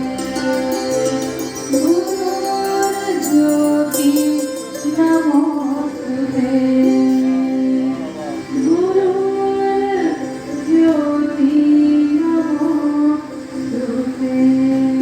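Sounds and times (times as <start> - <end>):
instrumental accompaniment: 0.0 - 15.0
woman singing a chant: 0.0 - 15.0.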